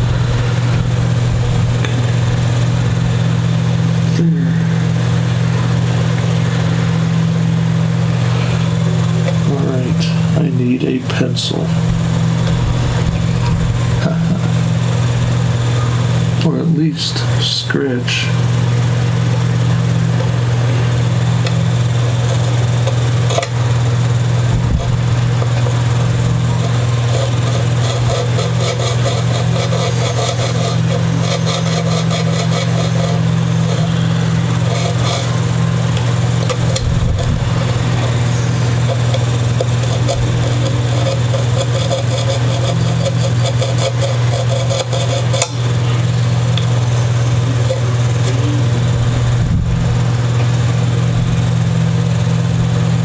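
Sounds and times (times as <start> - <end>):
low machine hum: 0.0 - 53.0
hand-sanding wood: 24.8 - 48.2.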